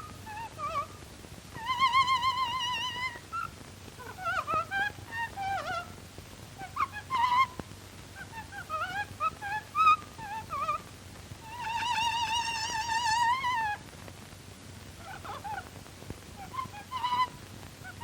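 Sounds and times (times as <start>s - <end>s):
parrot whistling: 0.0s - 1.0s, 1.6s - 6.0s, 6.6s - 7.6s, 8.2s - 10.8s, 11.4s - 13.8s, 15.0s - 15.6s, 16.4s - 18.0s.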